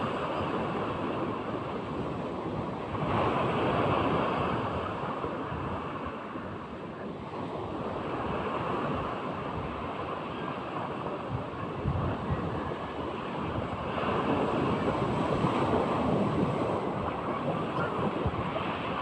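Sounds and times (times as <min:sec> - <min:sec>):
sea waves breaking: 0:00.0 - 0:19.0.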